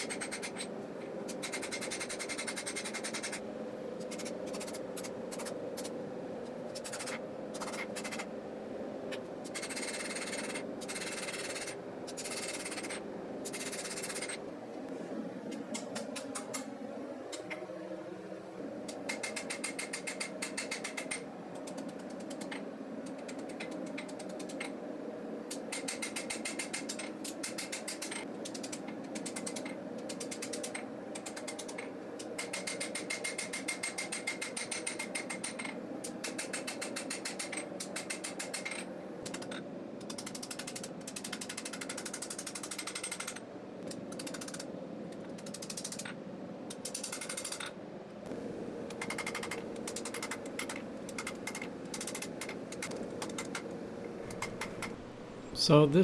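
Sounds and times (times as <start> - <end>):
steady hum: 47.9 - 56.0.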